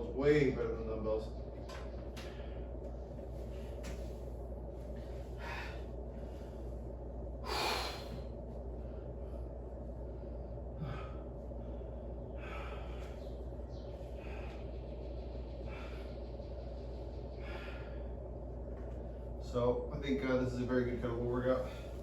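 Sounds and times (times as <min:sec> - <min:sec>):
steady low hum: 0:00.0 - 0:22.0
man breathing hard: 0:05.1 - 0:16.4, 0:17.2 - 0:18.4, 0:21.6 - 0:22.0.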